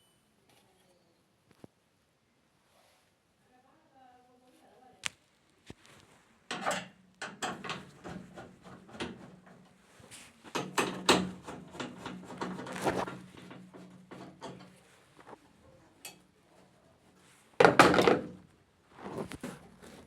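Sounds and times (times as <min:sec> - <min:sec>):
parts knocking and clattering: 0:06.5 - 0:14.8, 0:17.6 - 0:18.4.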